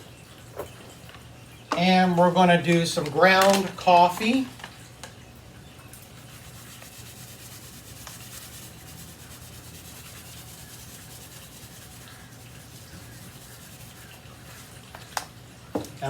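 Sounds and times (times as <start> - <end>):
constant low hum: 0.0 - 16.0
coffee grounds rubbed on carpet: 6.4 - 14.8.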